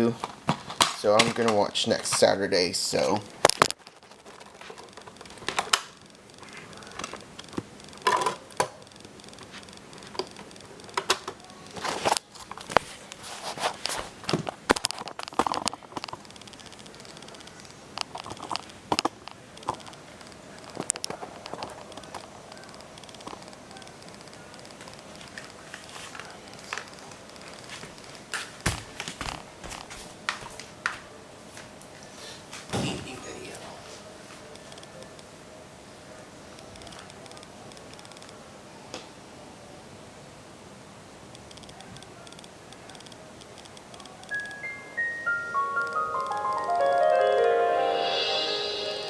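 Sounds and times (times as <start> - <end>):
crackly rustles: 2.9 - 30.8.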